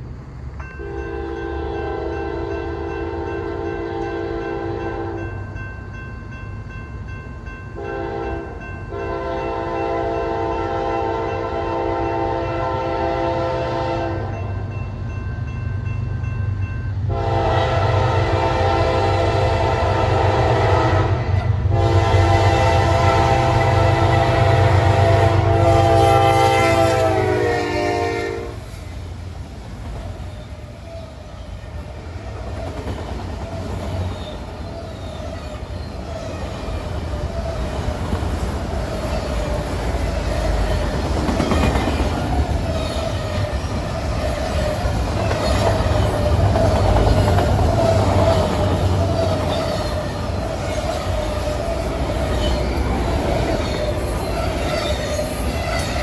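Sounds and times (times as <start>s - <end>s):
train rumbling past: 0.0s - 56.0s
train horn chord: 0.8s - 5.4s, 7.8s - 14.4s, 17.1s - 28.6s
wheels clicking over rail joints: 29.6s - 56.0s
high wheel squeal: 33.5s - 37.7s, 38.9s - 56.0s.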